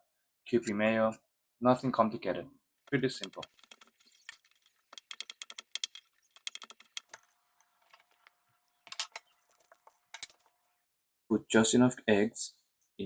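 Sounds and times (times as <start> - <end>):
light clicks and taps: 2.9 - 10.4.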